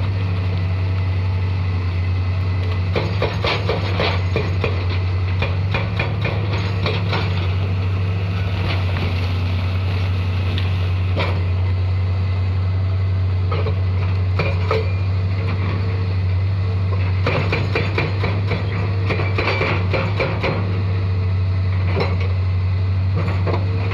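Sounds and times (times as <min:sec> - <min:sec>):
excavator diesel engine running: 0:00.0 - 0:23.9
knocks and clanks: 0:02.9 - 0:07.7.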